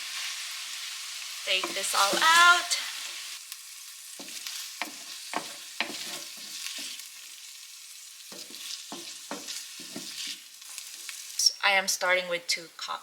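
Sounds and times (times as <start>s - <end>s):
food sizzling in a hot pan: 0.0s - 13.0s
utensil scraping and knocking pan: 4.2s - 7.0s, 8.3s - 10.4s.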